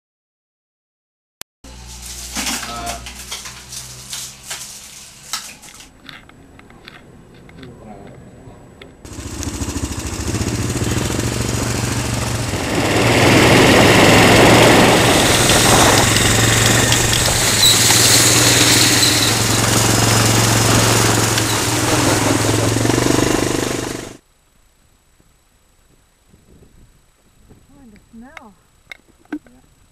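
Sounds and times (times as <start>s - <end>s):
engine running: 9.0s - 24.2s.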